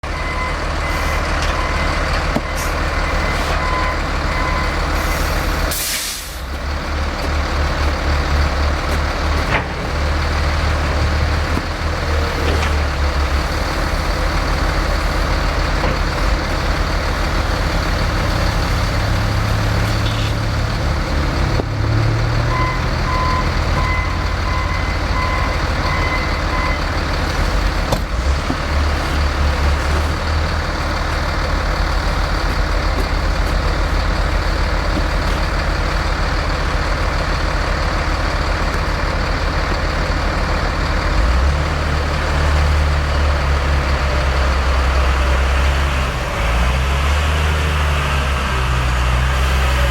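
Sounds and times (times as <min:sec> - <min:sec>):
backup alarm beeping: 0:00.0 - 0:05.3, 0:22.4 - 0:27.2
heavy diesel machinery running: 0:00.0 - 0:49.9
short loud hiss: 0:05.7 - 0:06.5.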